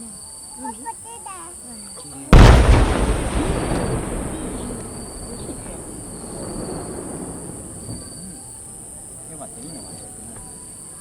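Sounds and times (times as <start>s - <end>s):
insect trill: 0.0s - 11.0s
insects chirring: 0.0s - 11.0s
firework burst echoing: 2.4s - 8.5s.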